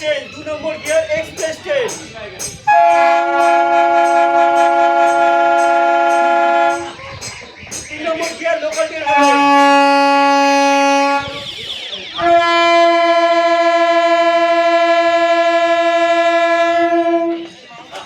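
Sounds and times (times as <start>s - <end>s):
train horn blasts: 2.7s - 7.0s, 9.0s - 17.6s.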